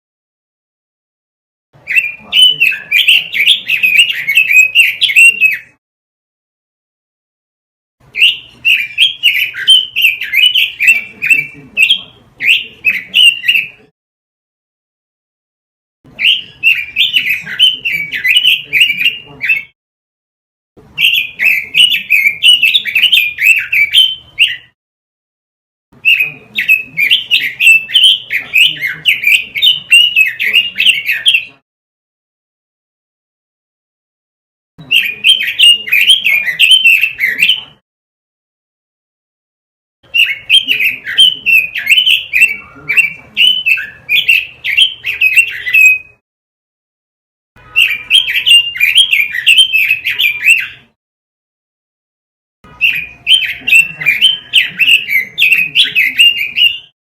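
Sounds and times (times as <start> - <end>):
bird warbling song: 1.8 - 5.8, 8.1 - 13.9, 16.1 - 19.8, 21.0 - 24.8, 26.0 - 31.6, 34.8 - 37.8, 40.1 - 46.2, 47.6 - 51.0, 52.7 - 57.0.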